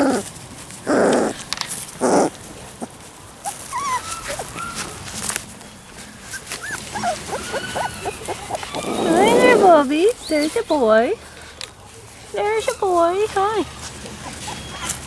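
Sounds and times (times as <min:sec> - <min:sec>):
puppies whimpering and whining: 0:02.0 - 0:05.4, 0:06.0 - 0:11.3, 0:12.0 - 0:15.0.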